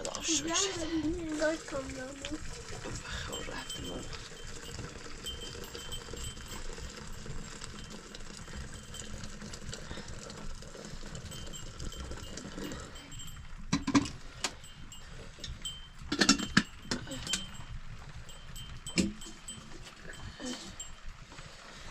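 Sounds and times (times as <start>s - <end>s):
sharp metallic clanks: 15.5s - 17.6s.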